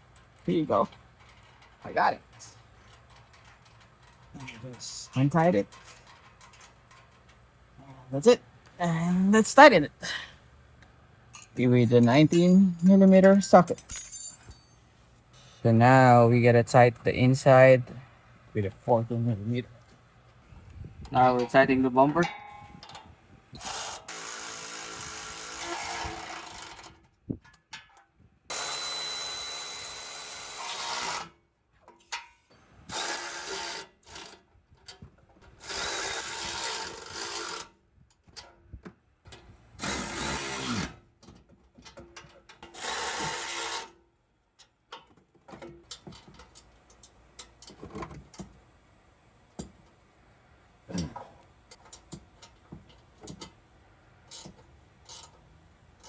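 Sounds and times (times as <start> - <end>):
clicks and knocks of tools: 0.1 - 7.5, 21.4 - 24.2, 25.6 - 28.6, 31.8 - 33.1, 34.0 - 35.6, 37.5 - 40.0, 41.2 - 48.6, 50.9 - 53.6, 54.2 - 55.4
power tool tightening bolts: 22.8 - 27.9, 28.5 - 31.4, 32.8 - 37.8, 39.3 - 44.0, 54.2 - 56.0.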